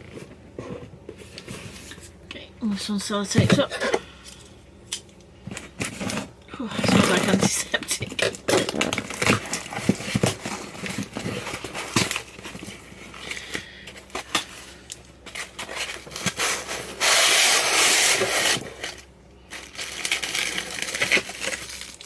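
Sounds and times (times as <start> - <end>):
packaging crinkling and rustling: 5.5 - 22.0.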